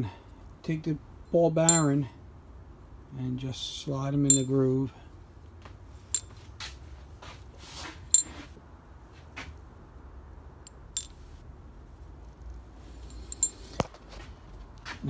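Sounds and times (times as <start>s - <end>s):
metallic clinks of ball bearings: 1.6s - 2.0s, 4.3s - 4.6s, 10.7s - 11.2s, 13.0s - 13.7s.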